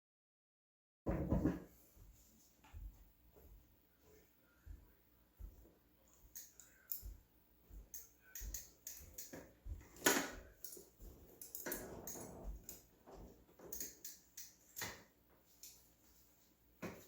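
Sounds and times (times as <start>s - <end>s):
bicycle parts clicking and rattling: 10.0s - 12.8s, 13.6s - 15.8s.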